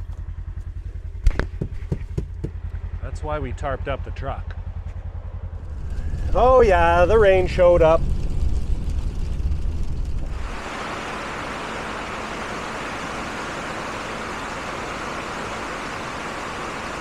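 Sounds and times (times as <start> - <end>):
low vehicle rumble: 0.0 - 17.0
steady rain falling: 9.7 - 17.0.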